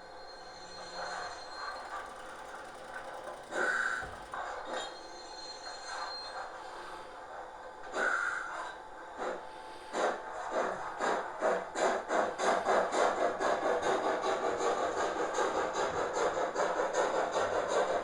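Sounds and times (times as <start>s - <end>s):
model train running hiss: 1.0s - 4.3s, 7.9s - 18.0s.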